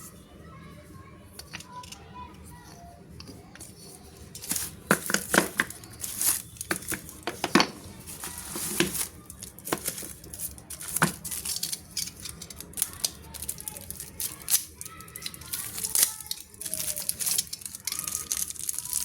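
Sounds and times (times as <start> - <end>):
packaging crinkling and tearing: 4.3 - 19.0
sharp clicks and rattles: 4.3 - 19.0.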